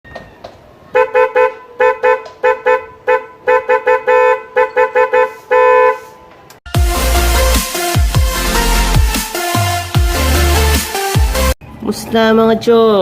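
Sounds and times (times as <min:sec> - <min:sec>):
loud electronic music: 0:06.7 - 0:11.6.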